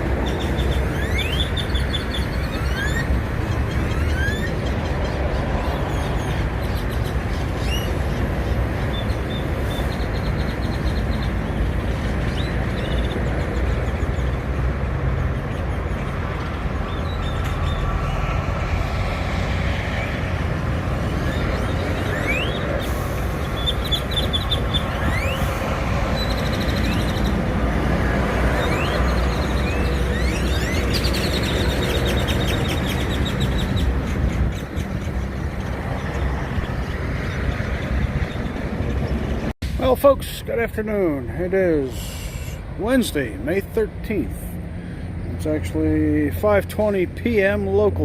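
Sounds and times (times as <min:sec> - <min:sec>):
small birds chirping: 0:00.0 - 0:18.3, 0:21.0 - 0:27.5, 0:28.5 - 0:39.9
engine and traffic rumble: 0:00.0 - 0:48.0.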